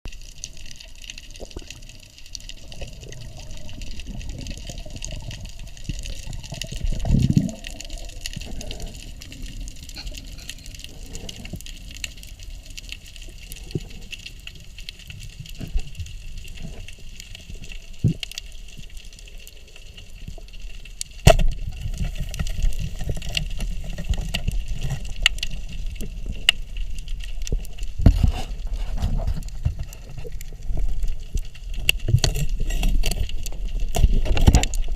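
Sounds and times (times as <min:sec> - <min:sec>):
underwater rumble and hiss: 0:00.1 - 0:34.9.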